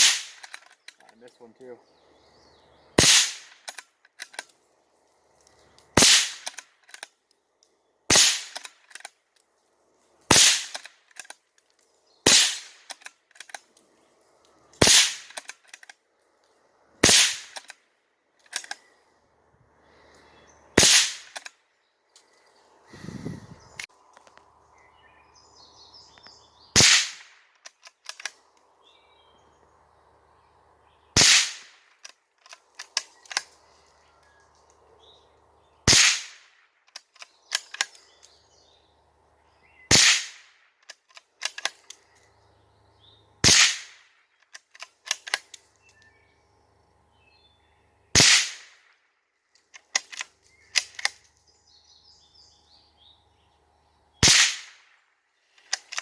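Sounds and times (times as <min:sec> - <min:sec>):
rifle shots: 0:00.0 - 0:00.6, 0:03.0 - 0:03.8, 0:06.0 - 0:06.6, 0:08.1 - 0:08.7, 0:10.3 - 0:10.9, 0:12.2 - 0:13.1, 0:14.8 - 0:15.5, 0:17.0 - 0:17.7, 0:20.8 - 0:21.5, 0:26.8 - 0:27.4, 0:31.2 - 0:32.0, 0:35.8 - 0:36.6, 0:39.9 - 0:40.5, 0:43.4 - 0:44.0, 0:48.2 - 0:48.8, 0:54.2 - 0:54.9
birds chirping: 0:00.0 - 0:03.1, 0:18.3 - 0:31.2, 0:37.1 - 0:39.9, 0:41.4 - 0:43.4, 0:45.5 - 0:48.1, 0:49.8 - 0:54.3
rifle bolt clicks: 0:00.3 - 0:01.1, 0:03.4 - 0:04.6, 0:12.8 - 0:13.7, 0:15.2 - 0:16.0, 0:17.4 - 0:17.8, 0:18.4 - 0:18.8, 0:21.2 - 0:21.5, 0:27.6 - 0:28.4.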